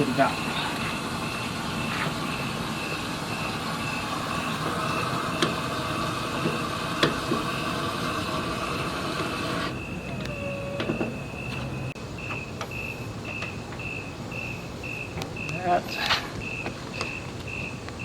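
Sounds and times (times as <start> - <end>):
water rushing through pipes: 0.2 - 9.9
faint high whistle: 9.8 - 11.6.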